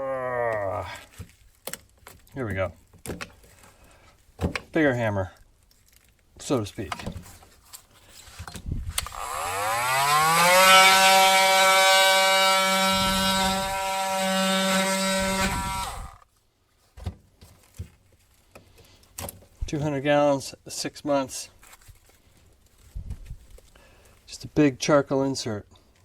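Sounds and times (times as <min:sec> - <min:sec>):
power tool motor spinning: 0:08.9 - 0:16.2.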